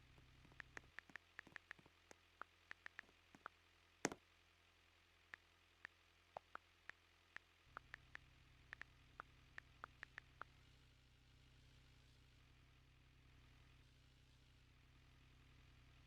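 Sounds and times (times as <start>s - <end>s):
small irregular clicks: 0.0s - 4.2s, 5.3s - 10.7s
faint low hum: 0.0s - 16.0s.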